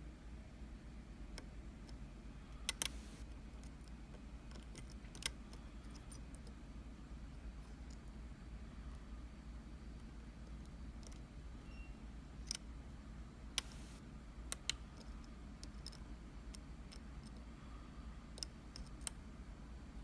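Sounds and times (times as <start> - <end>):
steady low hum: 0.0 - 20.0
lock pick clicking on pins: 2.6 - 6.5, 10.4 - 11.2, 14.5 - 17.4.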